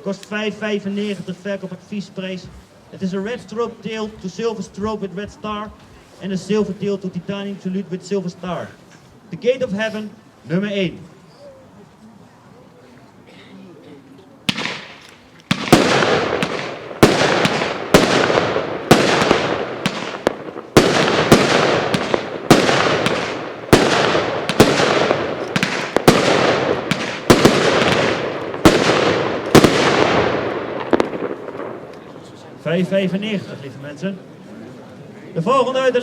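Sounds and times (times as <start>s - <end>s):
crackling hiss of fireworks: 0.0s - 10.5s, 14.4s - 33.4s
fireworks bangs: 14.4s - 32.7s.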